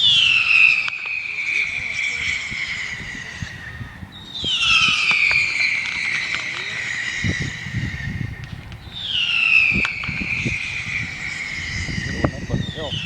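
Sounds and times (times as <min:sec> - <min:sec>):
whistling fireworks shrieking: 0:00.0 - 0:13.0
firework pops and crackles: 0:00.4 - 0:01.6, 0:04.7 - 0:07.3, 0:08.4 - 0:10.8.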